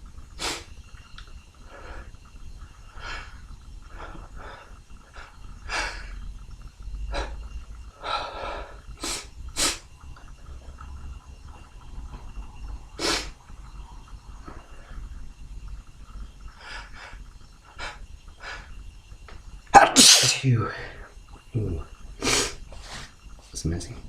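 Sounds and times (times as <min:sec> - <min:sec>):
man sniffing through nose: 0:00.4 - 0:00.7, 0:09.0 - 0:09.8, 0:13.0 - 0:13.3, 0:22.2 - 0:23.1
man sneezing: 0:19.8 - 0:20.6.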